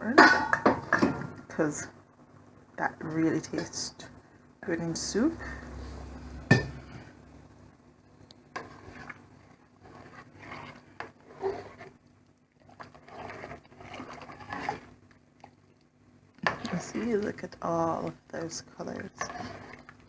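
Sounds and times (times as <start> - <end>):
spoon scraping in a pot: 8.5 - 12.0, 12.6 - 15.6, 16.4 - 20.0.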